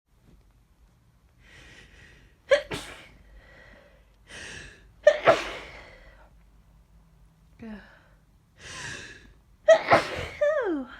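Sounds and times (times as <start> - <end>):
person sneezing: 2.5 - 3.2, 5.0 - 5.9, 9.7 - 10.6.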